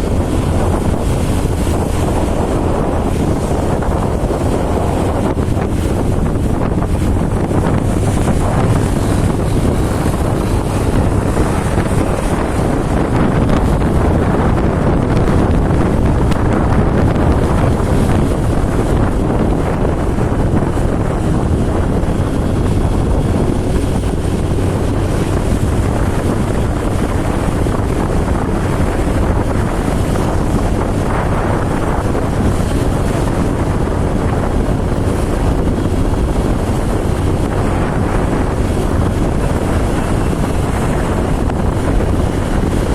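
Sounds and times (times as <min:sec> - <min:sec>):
vehicle road and engine noise: 0:00.0 - 0:42.9
wind rushing over microphone: 0:00.0 - 0:42.9.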